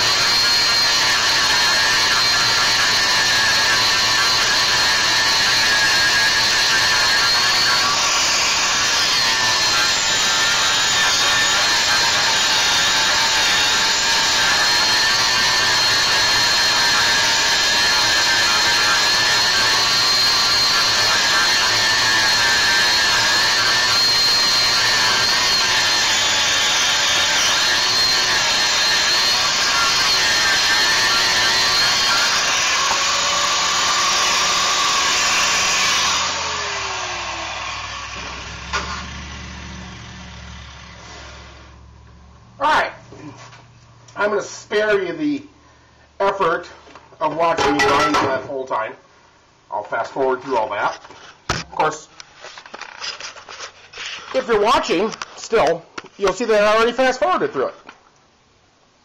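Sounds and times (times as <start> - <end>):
angle grinder grinding steel: 0.0 - 42.0
grinder spinning down: 0.0 - 42.1.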